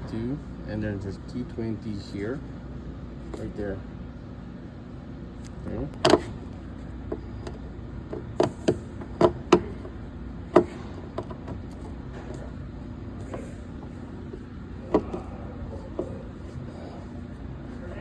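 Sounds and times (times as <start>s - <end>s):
steady low hum: 0.0s - 18.0s
hand tools clicking and knocking: 13.2s - 16.6s.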